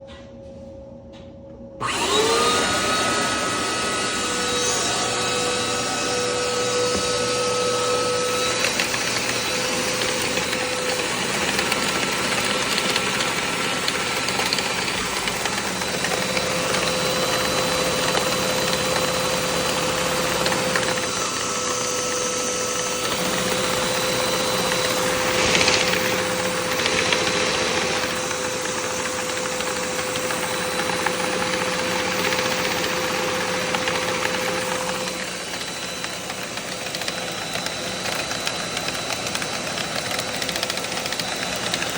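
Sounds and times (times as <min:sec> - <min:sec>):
vacuum cleaner whine: 0:00.0 - 0:41.9.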